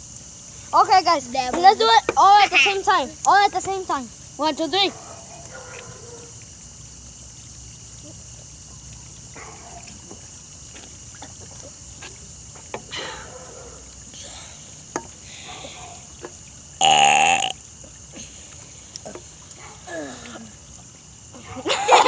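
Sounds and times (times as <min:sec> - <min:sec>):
person burping: 0:16.8 - 0:17.6.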